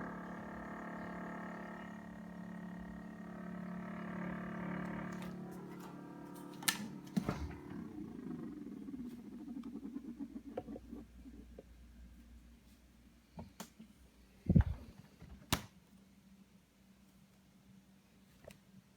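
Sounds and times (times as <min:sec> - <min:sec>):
refrigerator humming: 0:00.0 - 0:12.2
fast fluttering rattle: 0:07.8 - 0:11.6.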